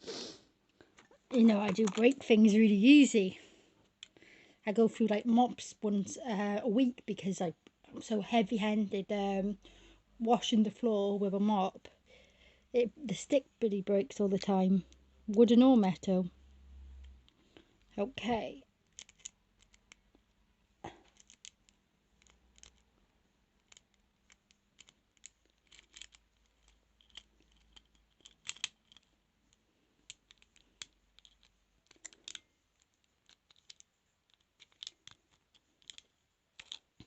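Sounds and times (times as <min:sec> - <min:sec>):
lock pick clicking and scratching: 0:01.4 - 0:02.3, 0:18.8 - 0:20.2, 0:21.0 - 0:37.0.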